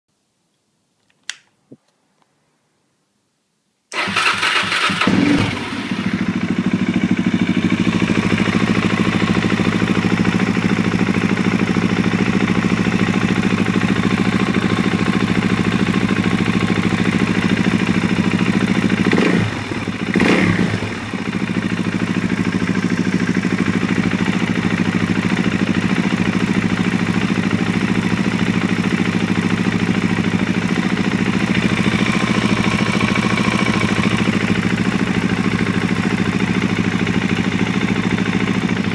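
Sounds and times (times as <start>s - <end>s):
motorcycle engine idling with tick: 5.8s - 38.9s
engine revving blips: 20.1s - 20.8s.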